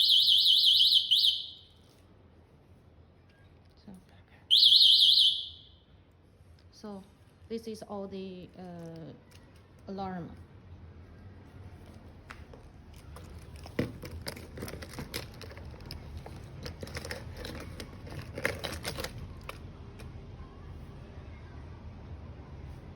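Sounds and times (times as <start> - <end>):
rustling: 11.6 - 20.1
handling clicks and knocks: 12.3 - 20.1.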